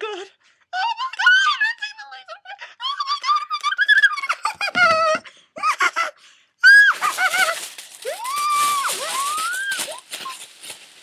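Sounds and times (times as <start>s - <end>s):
woman shrieking and squealing: 6.6s - 10.4s.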